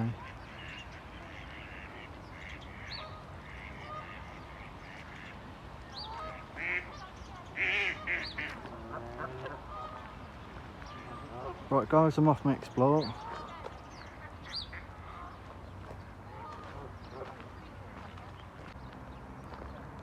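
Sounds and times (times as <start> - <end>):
waterfowl calling: 0.0 - 18.7
outdoor background noise: 0.0 - 20.0.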